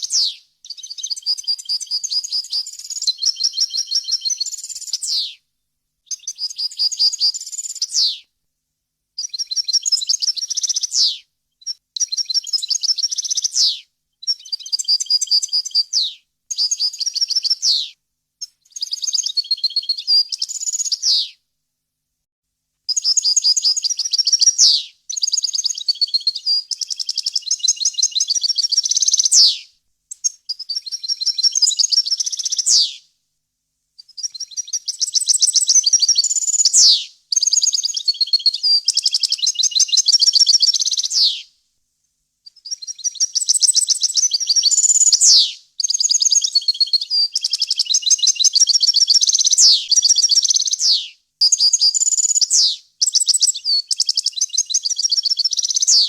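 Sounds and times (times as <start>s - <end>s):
goldfinch singing: 0.0s - 5.3s, 42.6s - 56.0s.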